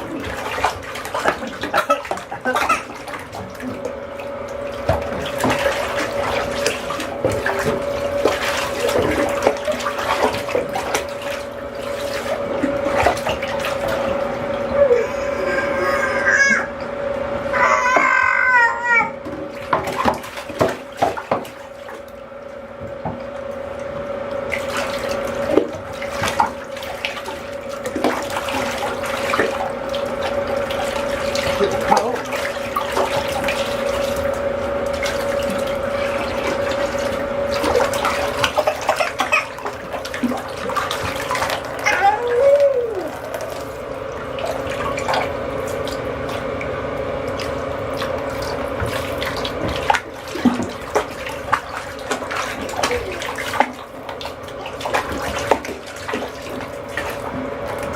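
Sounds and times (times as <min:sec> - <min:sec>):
water splashing: 0:00.0 - 0:18.3, 0:18.9 - 0:22.2, 0:22.9 - 0:57.9
water running from bathtub tap: 0:00.0 - 0:57.9
baby squealing: 0:14.8 - 0:16.8, 0:17.5 - 0:19.2.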